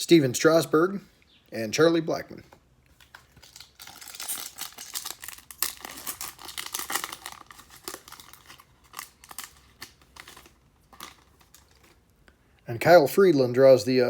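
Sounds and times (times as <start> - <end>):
cards being handled: 2.5 - 12.0
foil wrapper tearing and crinkling: 3.0 - 12.0.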